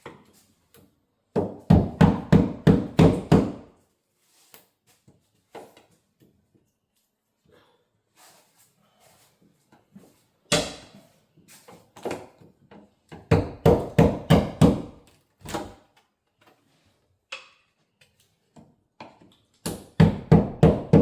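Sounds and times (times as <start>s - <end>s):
hard knocks on wood: 1.4s - 3.6s, 13.3s - 15.0s, 20.0s - 21.0s.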